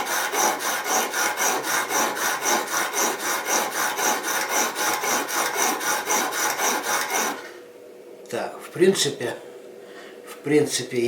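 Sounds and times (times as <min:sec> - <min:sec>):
blade rubbing on sharpening stone: 0:00.0 - 0:07.4.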